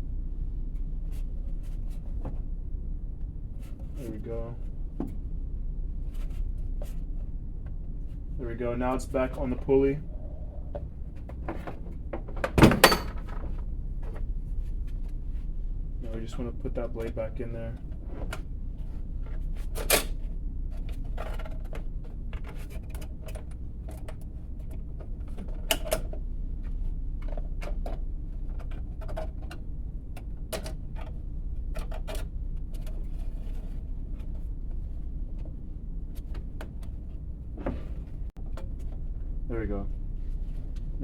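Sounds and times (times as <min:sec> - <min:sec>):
low hum: 0:00.0 - 0:21.3.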